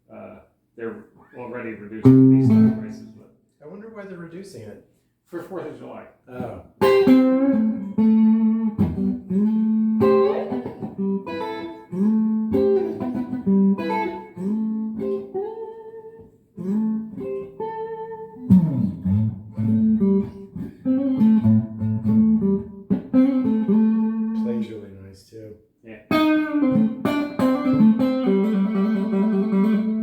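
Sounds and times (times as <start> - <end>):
electric guitar single notes: 2.0 - 3.2, 6.8 - 24.6, 26.1 - 30.0.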